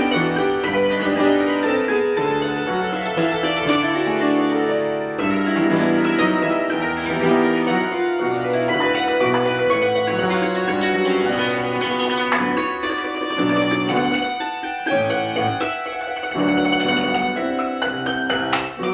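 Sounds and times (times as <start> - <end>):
cimbalom played with hammers: 5.2 - 18.9.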